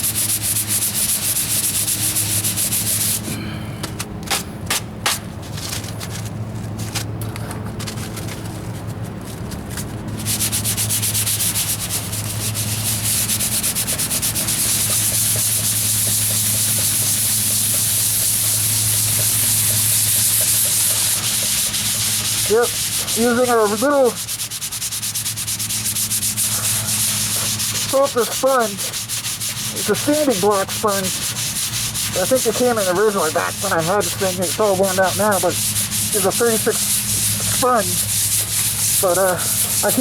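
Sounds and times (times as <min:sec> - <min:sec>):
sandpaper rubbing on metal: 0:00.0 - 0:03.3, 0:07.9 - 0:40.0.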